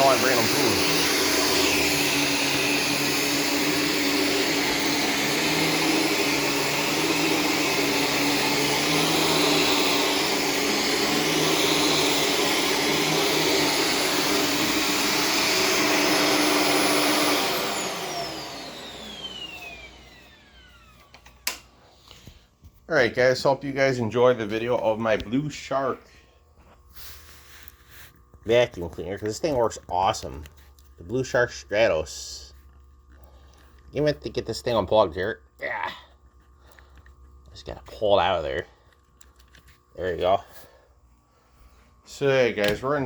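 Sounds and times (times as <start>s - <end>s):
motor winding down whine: 0.0s - 21.6s
vacuum cleaner running: 0.0s - 22.4s, 23.0s - 32.6s, 37.6s - 38.8s, 40.0s - 43.0s.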